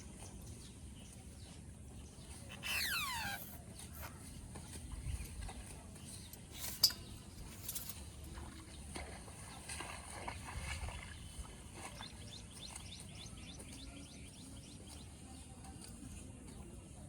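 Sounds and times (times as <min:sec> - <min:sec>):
small birds chirping: 0:00.0 - 0:17.0
rustling or splashing: 0:02.2 - 0:13.7.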